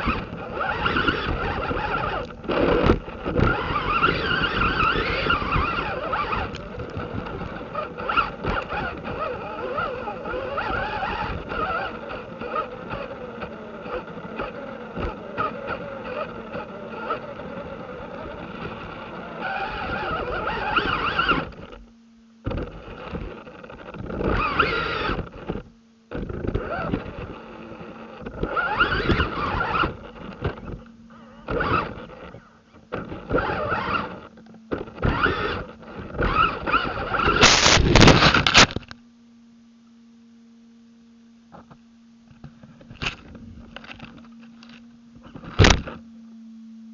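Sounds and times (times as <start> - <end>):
rc truck motor and gears whining: 0.0 - 39.0
faint steady hum: 0.0 - 46.9
tyres scrabbling over ground: 28.2 - 39.0.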